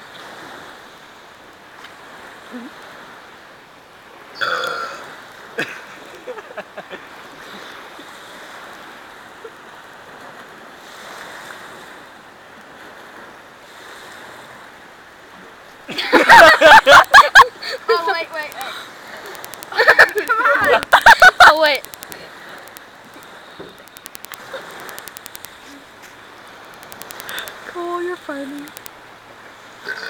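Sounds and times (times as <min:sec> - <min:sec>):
steady background hiss: 0:02.9 - 0:07.2, 0:14.5 - 0:30.0
person burping loudly: 0:04.4 - 0:05.1
short sharp clicks: 0:21.8 - 0:22.8, 0:23.7 - 0:25.6, 0:26.7 - 0:27.6.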